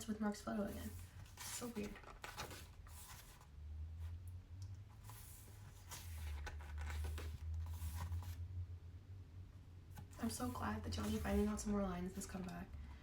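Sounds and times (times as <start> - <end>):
steady low hum: 0.0 - 13.0
photobook pages turning: 0.6 - 3.4, 5.0 - 8.4, 10.2 - 11.6.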